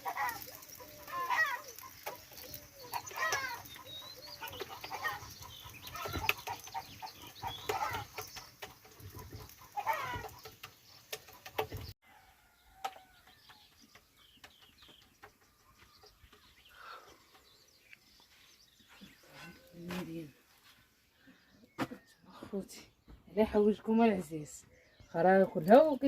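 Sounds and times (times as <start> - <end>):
chickens clucking: 0.0 - 20.3.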